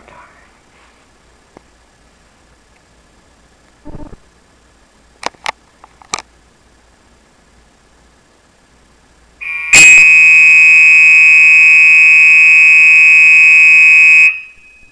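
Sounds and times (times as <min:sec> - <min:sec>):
high-pitched fire alarm tone: 0:09.4 - 0:14.9.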